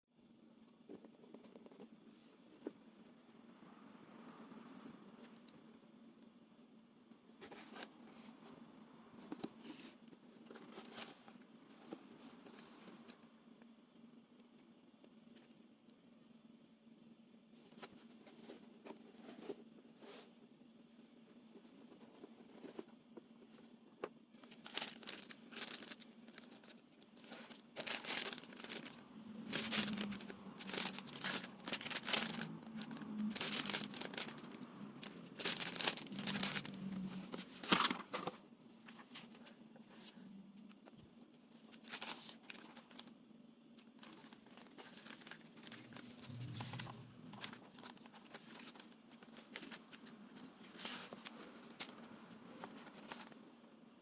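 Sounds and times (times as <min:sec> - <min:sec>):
faint low hum: 0:00.1 - 0:54.0
plastic bags crinkling and tearing: 0:24.5 - 0:37.1.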